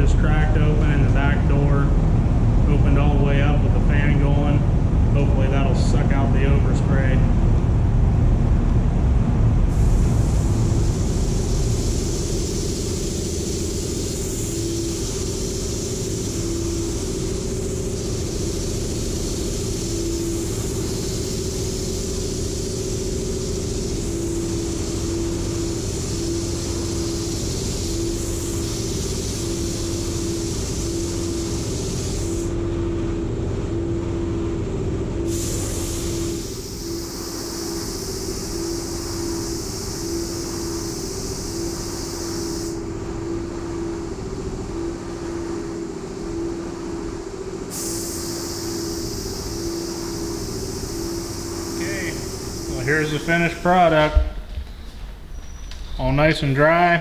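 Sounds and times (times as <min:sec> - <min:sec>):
fan running: 0:00.0 - 0:57.0
high hiss: 0:09.7 - 0:32.6, 0:35.3 - 0:57.0
pulsing tone: 0:10.9 - 0:32.8, 0:36.1 - 0:57.0.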